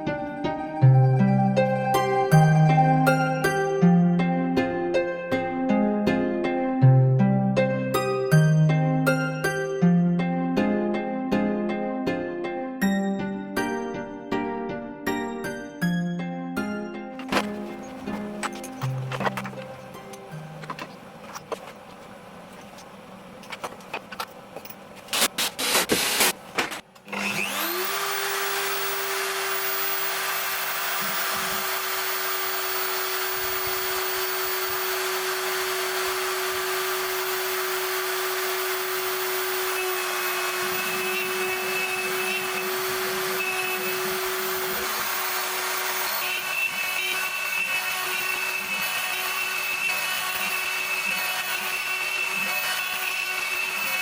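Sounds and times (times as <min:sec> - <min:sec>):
router spindle whine: 0:17.2 - 0:25.0, 0:27.0 - 0:54.0.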